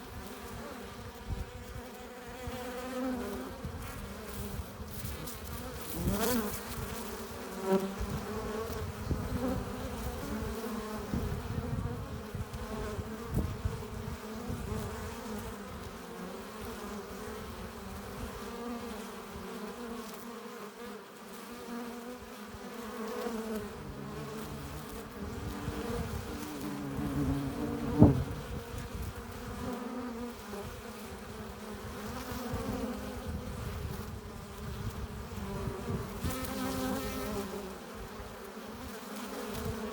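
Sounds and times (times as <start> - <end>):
bees buzzing: 12.6 - 33.8.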